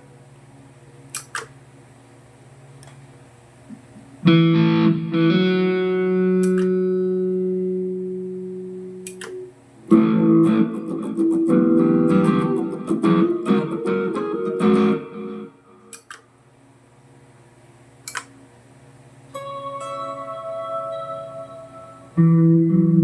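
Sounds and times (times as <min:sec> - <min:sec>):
electric guitar chords strummed: 0:04.2 - 0:15.9, 0:19.4 - 0:23.0.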